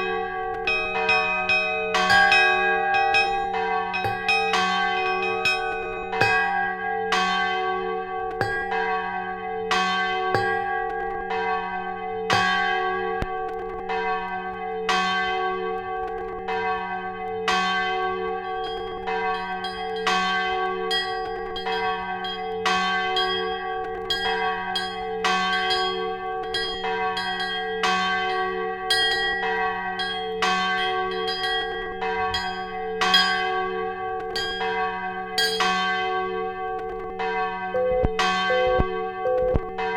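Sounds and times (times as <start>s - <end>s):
church bells pealing: 0.0s - 39.9s.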